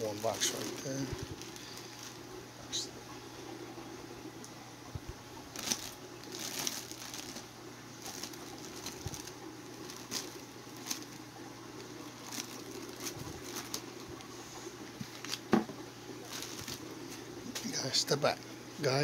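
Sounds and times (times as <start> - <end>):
newspaper and plastic rustling: 0.0 - 2.3, 5.5 - 18.4
steady low hum: 0.0 - 19.0.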